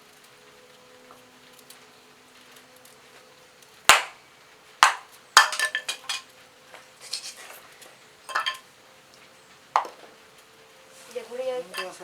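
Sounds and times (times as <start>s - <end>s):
sharp knocks: 3.9s - 4.2s, 4.8s - 6.1s.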